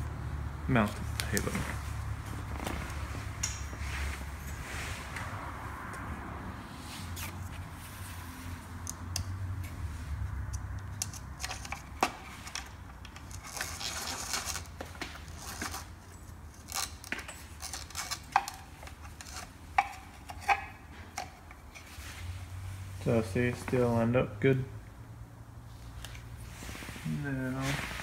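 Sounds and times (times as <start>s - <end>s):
plastic scraping rub: 16.6s - 22.3s.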